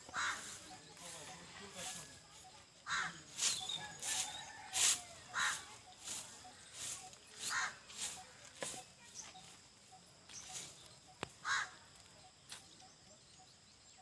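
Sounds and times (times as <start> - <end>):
short harsh bird calls: 2.9 - 8.4.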